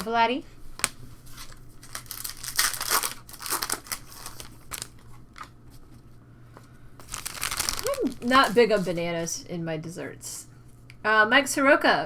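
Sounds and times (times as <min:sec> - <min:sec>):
foil wrappers crinkling: 0:00.8 - 0:05.5, 0:07.0 - 0:09.2.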